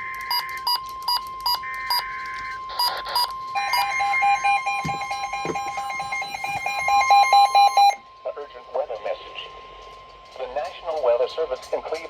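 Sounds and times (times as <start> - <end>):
steady high warning tone: 0.0 - 12.0
fast beeping pattern: 2.7 - 8.0
short beeps: 2.7 - 8.0.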